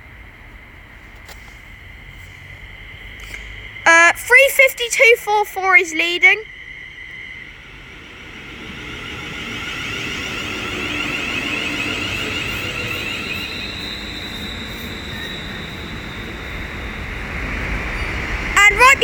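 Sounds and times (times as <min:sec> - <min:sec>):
electric train rumbling past: 0:00.0 - 0:19.0
wavering high electric whine: 0:01.6 - 0:19.0
steady high tone: 0:03.3 - 0:19.0.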